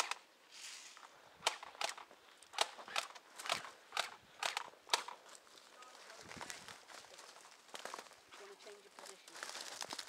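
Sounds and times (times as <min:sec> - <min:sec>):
footsteps crunching through undergrowth: 0:05.1 - 0:10.0.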